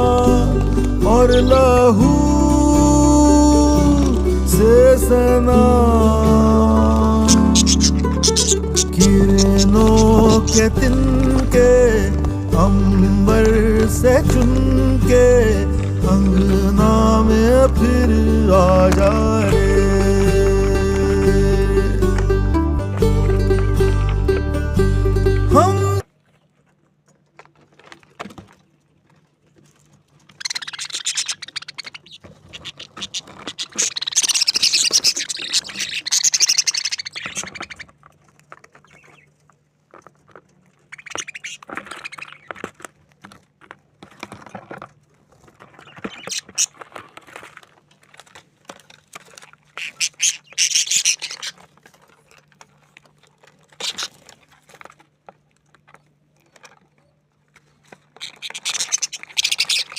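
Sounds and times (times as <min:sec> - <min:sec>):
budgerigars chattering and chirping: 0:01.0 - 0:02.2, 0:06.9 - 0:11.7, 0:30.4 - 0:37.9, 0:38.8 - 0:39.3, 0:40.9 - 0:42.6, 0:45.8 - 0:46.7, 0:49.8 - 0:51.6, 0:53.8 - 0:54.1, 0:58.2 - 0:59.9.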